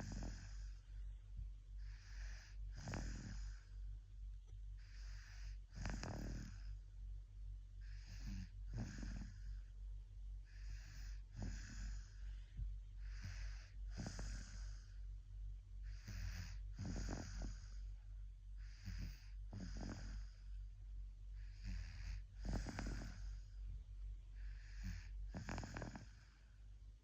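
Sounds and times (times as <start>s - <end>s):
baby snoring: 0.0s - 0.8s, 1.8s - 3.7s, 4.8s - 6.8s, 7.8s - 9.6s, 10.5s - 12.2s, 13.0s - 15.0s, 15.9s - 17.9s, 18.6s - 20.5s, 21.4s - 23.4s, 24.4s - 26.3s.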